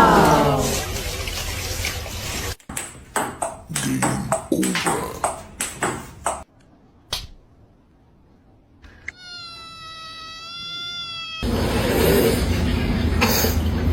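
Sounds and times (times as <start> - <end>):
cat long meow: 9.1 - 11.6
cat making sharp noisy bursts: 9.1 - 11.6.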